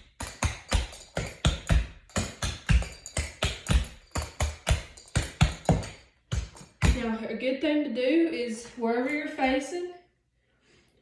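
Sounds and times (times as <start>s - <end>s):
tap shoes clicking on hard floor: 0.0s - 7.1s.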